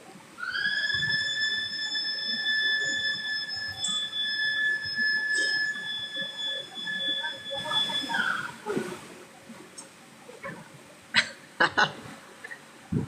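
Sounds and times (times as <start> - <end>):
high whistling tone: 0.4 - 8.7.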